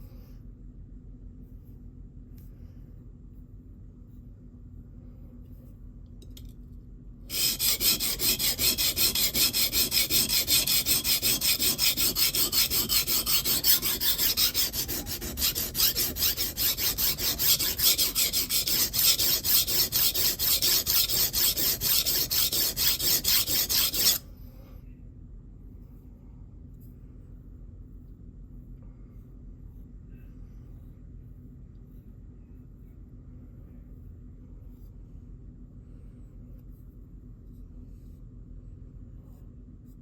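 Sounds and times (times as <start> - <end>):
knife grinding on sharpening plate: 7.3 - 24.2.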